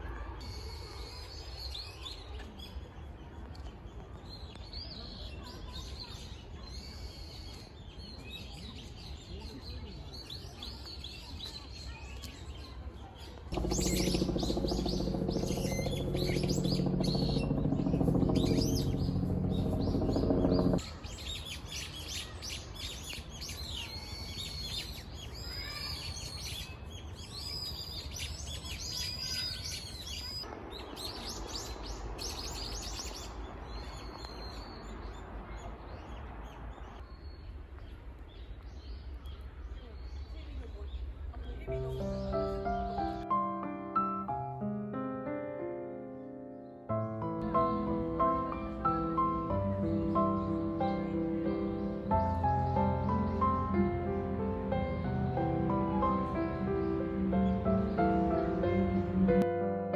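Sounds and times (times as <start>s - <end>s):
small birds chirping: 5.4s - 43.2s, 47.7s - 59.2s
low rumble with hum: 13.5s - 20.8s.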